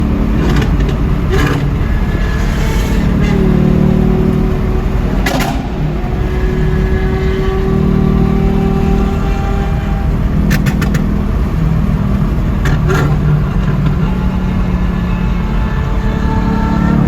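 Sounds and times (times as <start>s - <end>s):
car engine running: 0.0s - 17.0s
exhaust pops and crackles: 0.0s - 17.0s.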